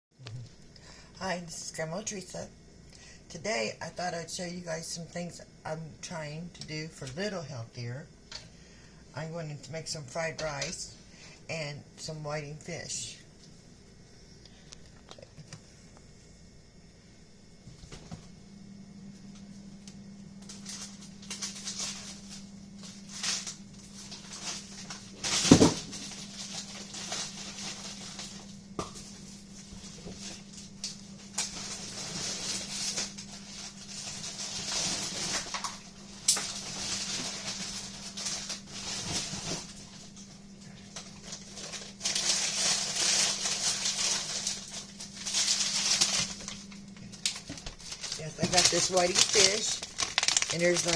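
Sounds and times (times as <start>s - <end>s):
steady low hum: 0.1s - 50.9s
rustling: 40.9s - 50.9s.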